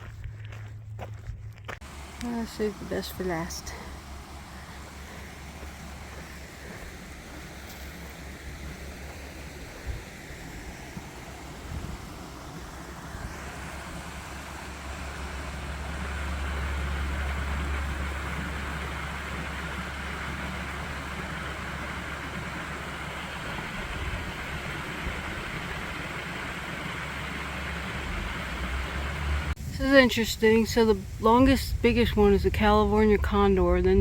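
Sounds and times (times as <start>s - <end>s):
wind buffeting microphone: 3.9s - 14.3s, 15.4s - 26.2s.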